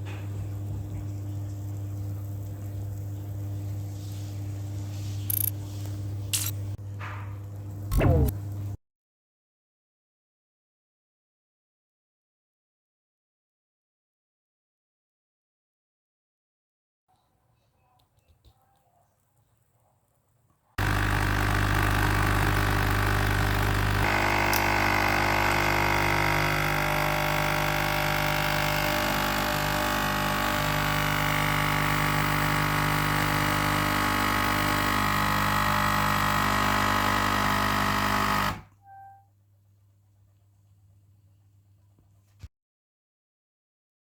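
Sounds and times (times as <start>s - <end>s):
coffee machine pump humming: 0.0s - 8.8s, 20.8s - 39.1s.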